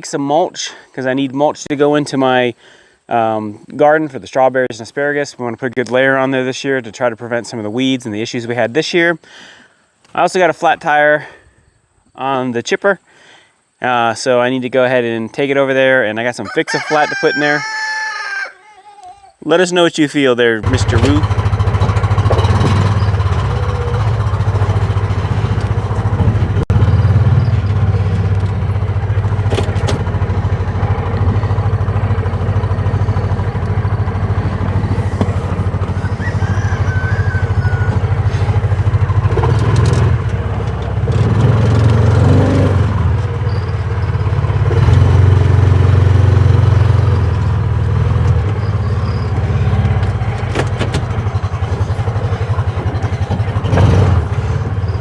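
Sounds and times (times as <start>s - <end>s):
vehicle engine running: 20.6s - 55.0s.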